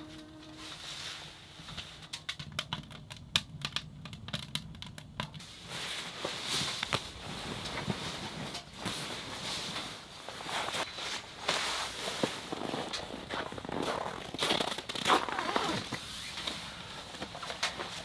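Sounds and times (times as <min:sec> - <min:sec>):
fabric rustling and crinkling: 0:05.4 - 0:18.0.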